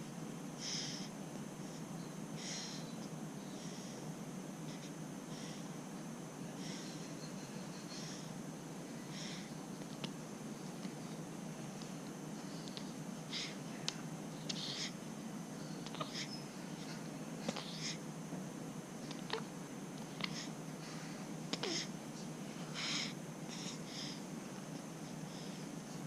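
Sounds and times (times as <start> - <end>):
steady low hum: 0.0 - 26.0
baby snuffling and breathing: 14.5 - 15.0, 15.8 - 18.0.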